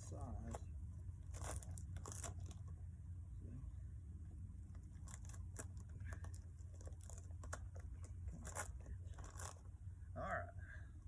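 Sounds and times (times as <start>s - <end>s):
steady low rumble: 0.0s - 11.0s
asphalt crunching and scraping: 0.1s - 2.7s.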